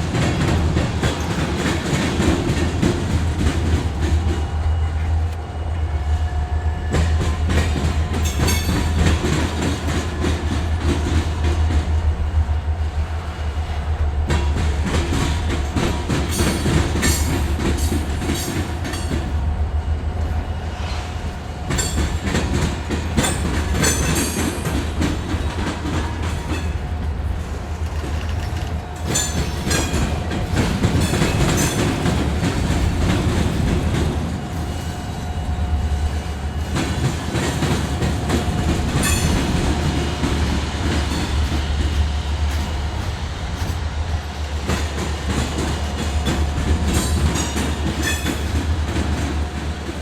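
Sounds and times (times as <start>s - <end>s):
freight train rumbling: 0.0s - 50.0s
wheels clanking over rail joints: 6.8s - 11.9s, 14.2s - 19.4s, 20.1s - 34.9s, 36.6s - 50.0s.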